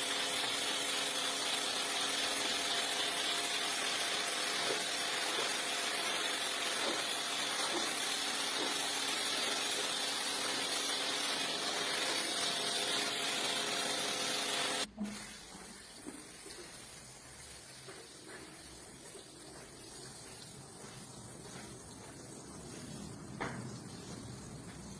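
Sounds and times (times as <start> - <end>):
water spraying onto rug: 0.0 - 24.9.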